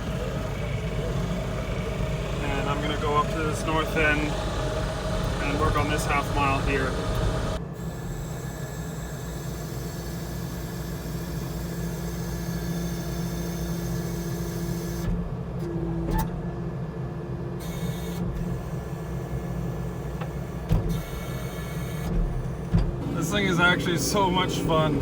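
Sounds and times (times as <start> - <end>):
steady whine: 0.0 - 7.6, 23.0 - 25.0
skid steer engine running: 0.0 - 25.0.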